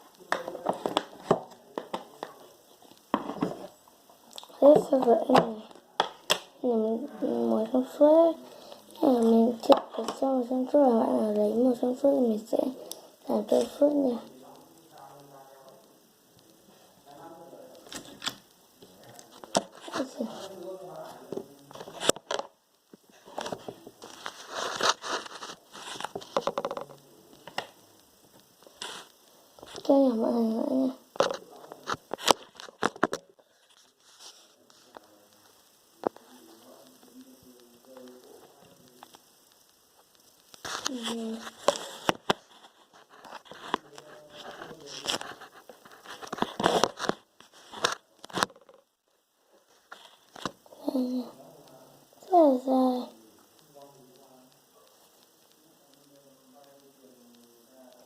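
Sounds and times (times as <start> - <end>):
sticky pops and crackles: 4.3 - 6.6, 34.7 - 48.7
slime crackling and rustling: 23.1 - 36.8, 37.6 - 48.7.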